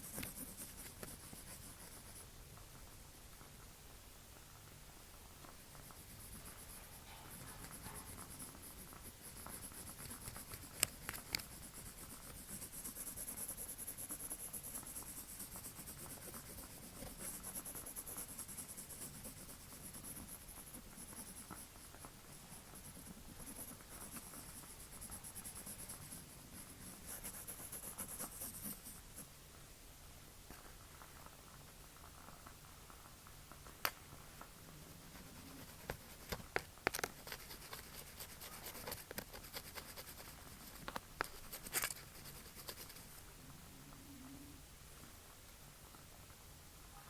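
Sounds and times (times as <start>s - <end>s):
pencil scratching on paper: 0.0s - 2.3s, 5.6s - 29.3s, 34.8s - 43.2s.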